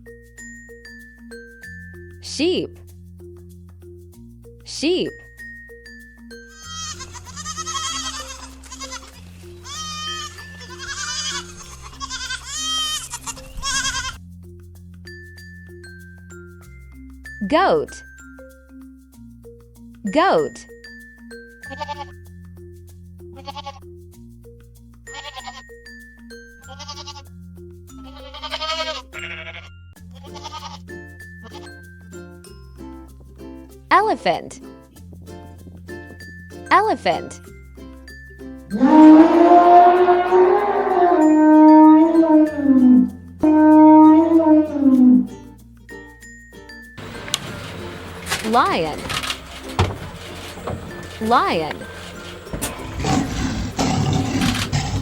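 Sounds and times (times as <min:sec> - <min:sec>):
mallet percussion children's music: 0:00.0 - 0:53.0
sheep bleating: 0:06.6 - 0:14.2, 0:21.7 - 0:22.2, 0:23.4 - 0:23.8, 0:25.1 - 0:25.6, 0:26.7 - 0:27.3, 0:28.0 - 0:31.7, 0:38.7 - 0:45.3.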